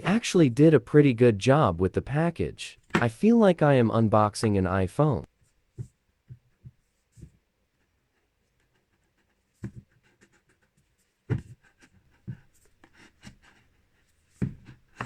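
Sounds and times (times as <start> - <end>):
box being handled and knocked: 11.3 - 11.6, 14.3 - 15.0.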